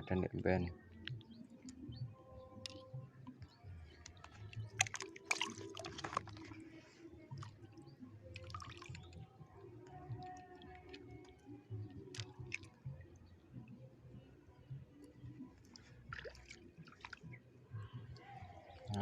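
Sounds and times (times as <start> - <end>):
water splashes and drips: 3.9 - 13.0, 15.6 - 17.4.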